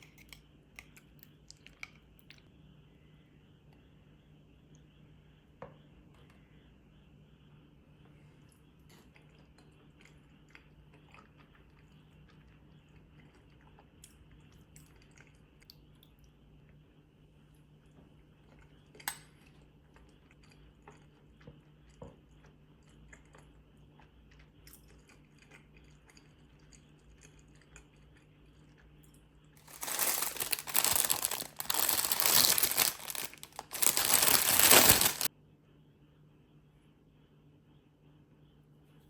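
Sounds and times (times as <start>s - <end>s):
wrapper crinkling and tearing: 29.6s - 35.3s.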